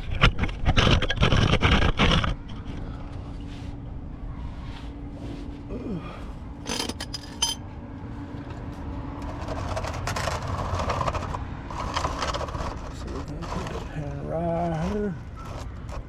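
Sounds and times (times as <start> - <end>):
metal tools clinking: 6.6 - 7.6
scraping and rattling: 6.6 - 7.6, 9.2 - 16.0.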